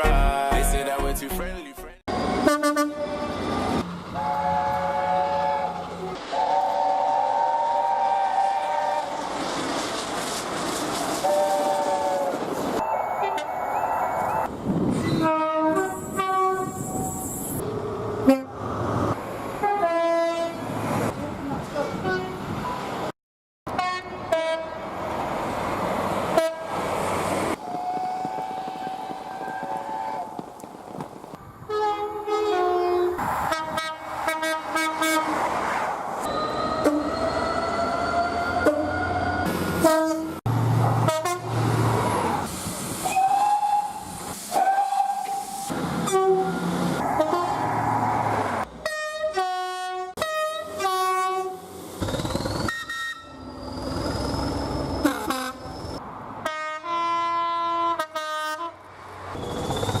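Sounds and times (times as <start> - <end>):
train horns: 2.1 - 3.5, 4.1 - 9.3, 11.2 - 17.2, 18.2 - 18.6, 19.6 - 20.7, 21.8 - 22.4, 23.7 - 25.0, 26.3 - 26.9, 27.5 - 30.3, 31.7 - 35.5, 36.3 - 40.4, 41.0 - 42.2, 43.0 - 47.7, 48.8 - 51.7, 55.0 - 55.7, 56.4 - 58.8
train running noise: 2.1 - 23.1, 23.7 - 49.4, 50.2 - 56.6.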